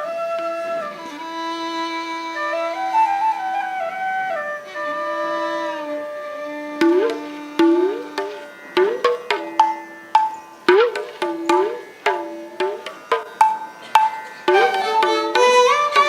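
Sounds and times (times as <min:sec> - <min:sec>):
flute melody: 0:00.0 - 0:08.4, 0:14.5 - 0:16.0
sustained accompaniment: 0:06.5 - 0:16.0
hand drum strokes: 0:06.8 - 0:16.0.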